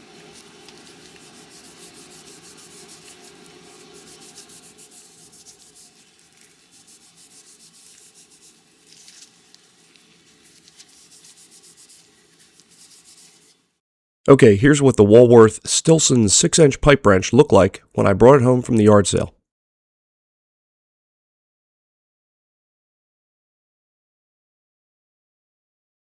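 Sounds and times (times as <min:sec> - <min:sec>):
rubbing strokes on metal wrench: 0:00.0 - 0:13.7.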